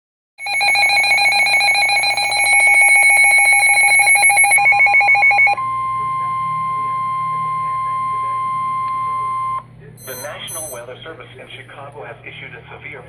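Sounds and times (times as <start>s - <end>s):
shrill pulsing alarm tone: 0.4s - 10.9s
faint steady tone: 5.6s - 10.8s.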